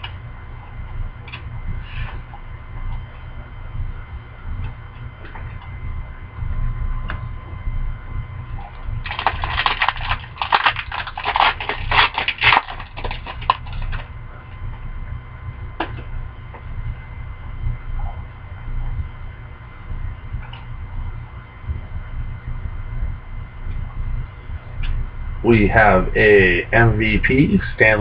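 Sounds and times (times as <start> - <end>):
plastic wrapper crinkling: 9.0 - 14.1.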